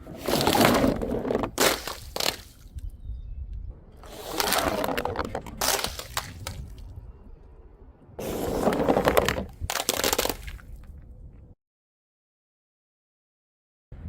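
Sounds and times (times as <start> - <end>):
brittle things crunching: 0.2 - 2.8, 4.0 - 6.9, 9.2 - 10.9
sharp cracks: 1.5 - 2.9, 4.0 - 7.0, 9.4 - 10.8.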